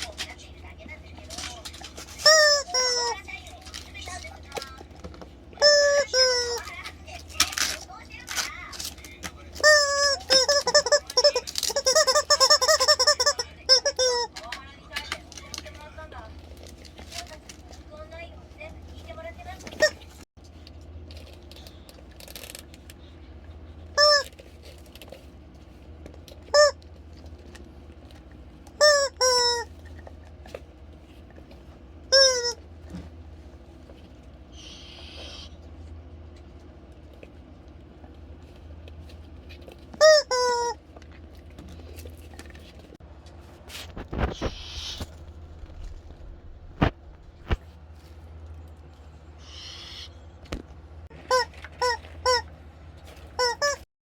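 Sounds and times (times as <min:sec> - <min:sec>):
ferrets scuffling: 0:00.0 - 0:53.8
steady low hum: 0:00.0 - 0:53.8
bird toy honking: 0:01.2 - 0:04.6, 0:05.6 - 0:09.0, 0:09.6 - 0:15.6, 0:24.0 - 0:24.4, 0:26.5 - 0:26.8, 0:28.8 - 0:29.7, 0:32.1 - 0:32.6, 0:34.5 - 0:35.6, 0:40.0 - 0:40.8, 0:49.4 - 0:50.2, 0:51.2 - 0:52.6, 0:53.2 - 0:53.8.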